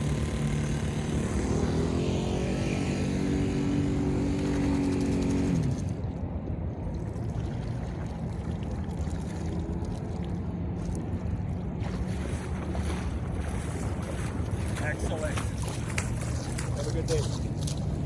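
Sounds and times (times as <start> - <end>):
model boat engine running: 0.0 - 1.9
water noise: 0.0 - 18.0
wind: 0.0 - 18.0.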